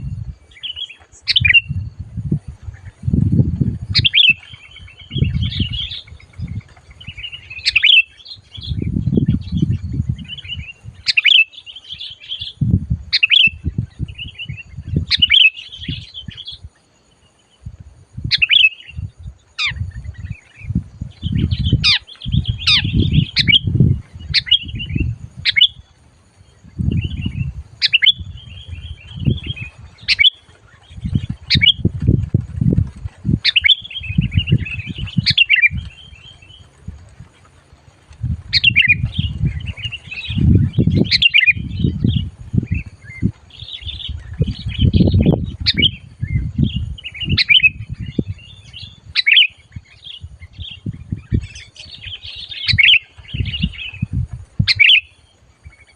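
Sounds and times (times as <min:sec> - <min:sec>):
songbird chirping: 0:00.0 - 0:55.9.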